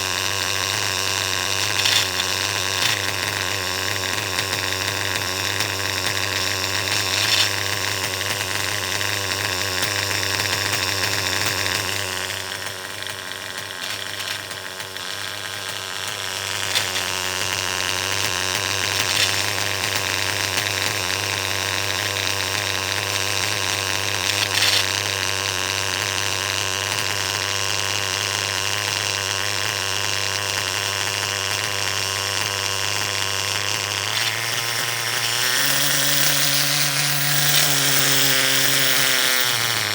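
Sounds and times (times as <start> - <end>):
engine idling: 0.0 - 24.5.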